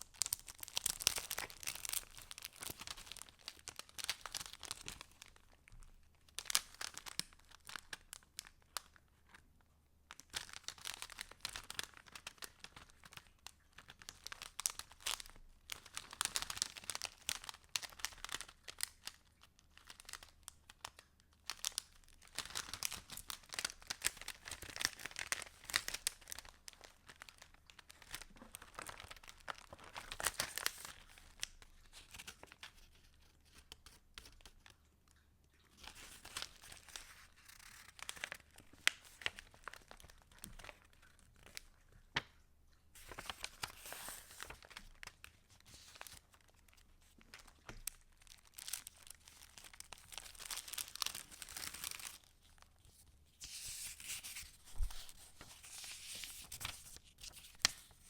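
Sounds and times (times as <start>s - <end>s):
paper pages rustling: 27.8s - 34.6s, 35.7s - 42.4s, 43.0s - 58.0s.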